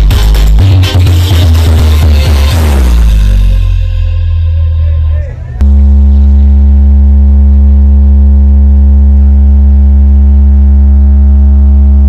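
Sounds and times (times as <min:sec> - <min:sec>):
low-pitched hum: 0:02.8 - 0:12.0.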